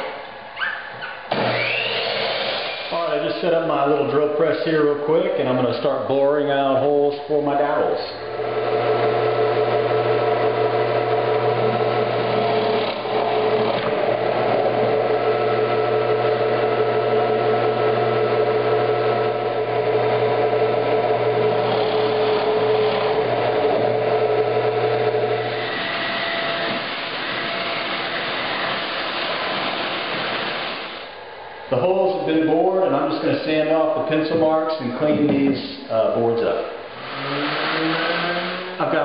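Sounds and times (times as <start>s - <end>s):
drill press motor running: 1.3s - 2.9s, 8.2s - 31.1s, 36.9s - 38.8s.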